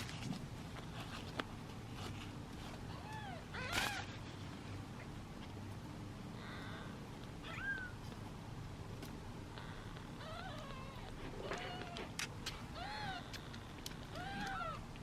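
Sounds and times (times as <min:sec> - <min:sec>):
kittens mewing: 0:02.8 - 0:04.2, 0:06.3 - 0:08.0, 0:09.5 - 0:15.0.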